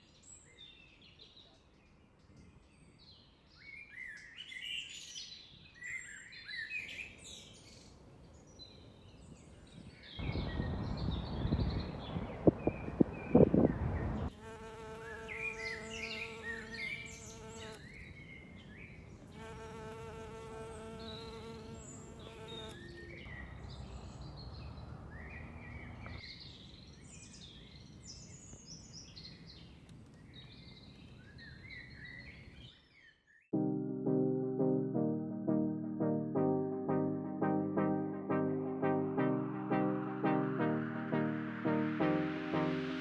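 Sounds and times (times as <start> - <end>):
small birds chirping: 0.0 - 33.5
flying insect buzzing: 14.3 - 17.8, 19.3 - 22.8.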